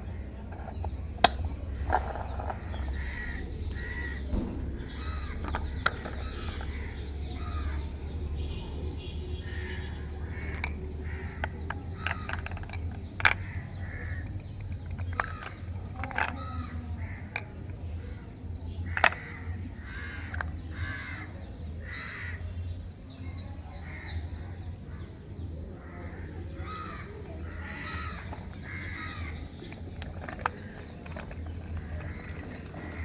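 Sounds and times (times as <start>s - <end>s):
low steady hum: 0.0s - 9.4s
harsh bird calls: 0.0s - 33.0s.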